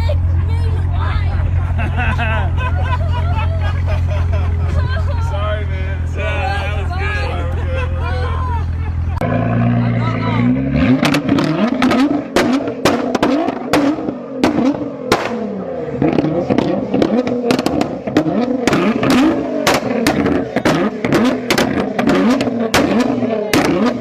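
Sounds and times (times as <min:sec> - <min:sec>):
car engine revving: 0:08.9 - 0:24.0
exhaust pops and backfires: 0:09.2 - 0:24.0.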